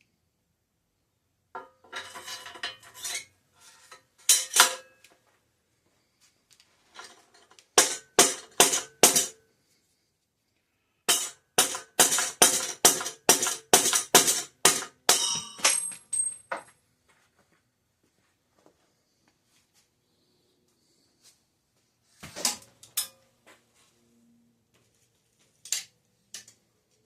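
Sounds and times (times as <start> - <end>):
hammer striking metal: 7.8 - 9.4, 11.1 - 16.3.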